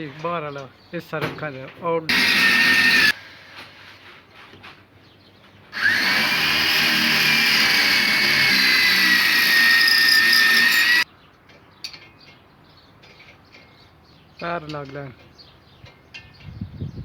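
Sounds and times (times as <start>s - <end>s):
electric drill whining: 2.1s - 3.2s, 5.8s - 11.0s.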